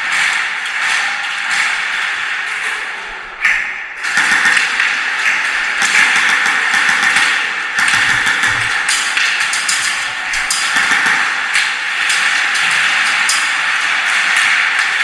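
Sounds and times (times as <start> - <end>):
airsoft guns firing in bursts: 4.0 - 12.6.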